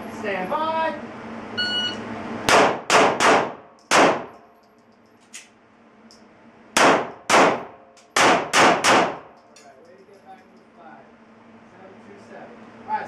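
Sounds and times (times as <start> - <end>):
pistol shots: 2.5 - 4.3, 6.8 - 9.3.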